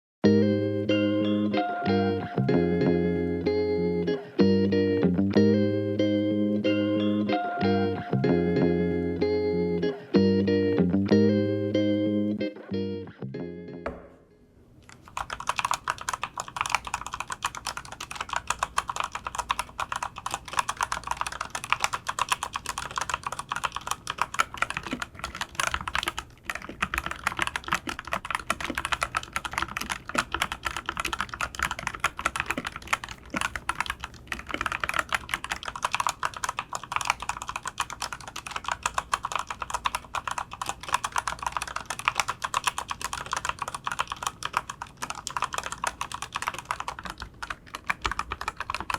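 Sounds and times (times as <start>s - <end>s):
mechanical keyboard typing: 14.9s - 48.9s.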